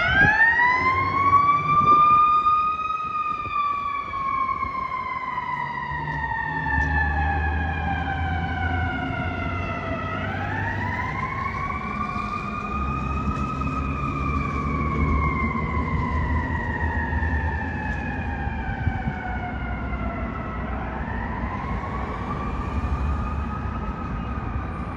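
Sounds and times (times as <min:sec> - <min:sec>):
fire truck siren wailing: 0:00.0 - 0:24.9
low drone: 0:20.8 - 0:24.9.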